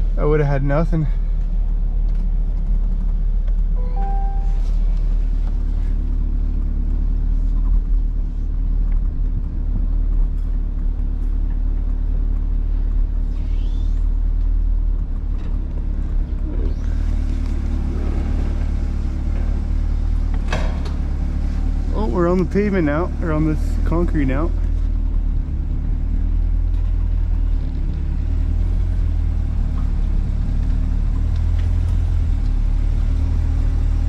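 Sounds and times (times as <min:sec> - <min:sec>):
car engine deep rumble: 0:00.0 - 0:34.0.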